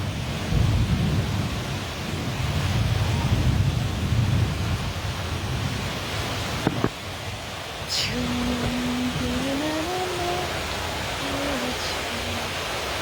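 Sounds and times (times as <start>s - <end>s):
thunder rumbling: 0.0s - 7.0s
rain falling: 0.0s - 13.0s.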